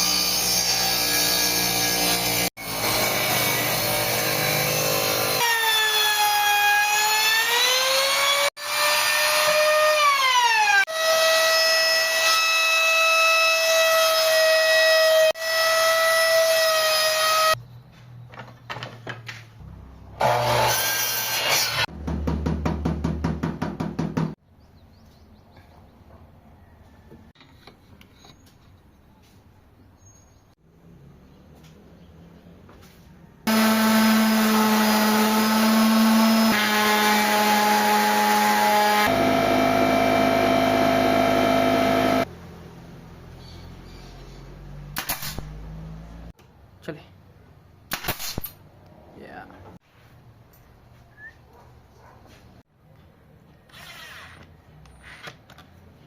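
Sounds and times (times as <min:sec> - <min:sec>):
power tool motor whining: 0:33.5 - 0:42.3.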